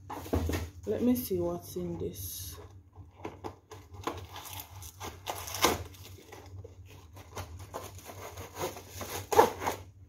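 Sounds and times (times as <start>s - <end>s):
packaging rustling and crinkling: 2.6s - 9.9s.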